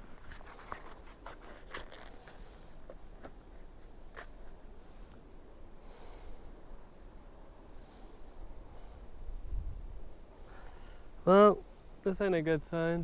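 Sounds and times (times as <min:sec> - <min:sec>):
small handling clicks and rustles: 0:00.0 - 0:04.6
low background hiss: 0:02.4 - 0:13.0.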